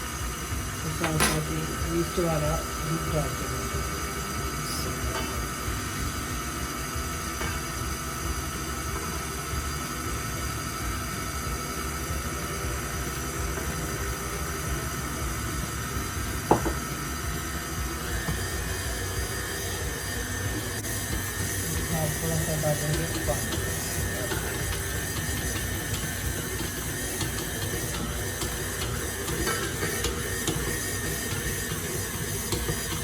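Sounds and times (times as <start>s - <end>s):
kitchen mixer motor whining: 0.0s - 33.0s.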